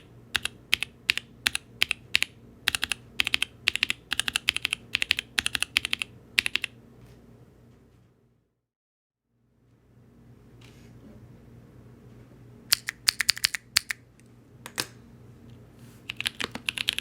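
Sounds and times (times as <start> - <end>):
typing on mechanical keyboard: 0.0 - 6.7, 12.7 - 14.0, 16.1 - 17.0.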